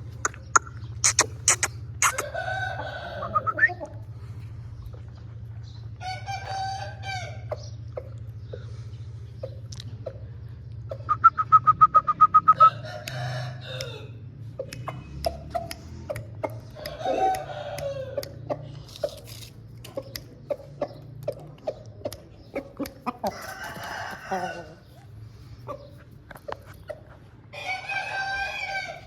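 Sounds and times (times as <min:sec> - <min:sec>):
steady low hum: 0:00.0 - 0:27.6
chickens clucking and squawking: 0:00.0 - 0:29.0
sharp clicks: 0:00.2 - 0:02.2.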